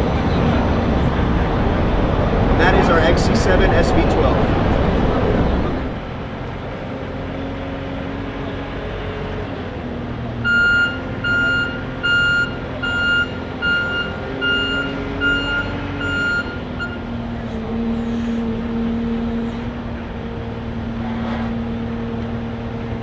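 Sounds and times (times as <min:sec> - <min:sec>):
loader engine running: 0:00.0 - 0:23.0
backup alarm beeping: 0:10.5 - 0:17.0.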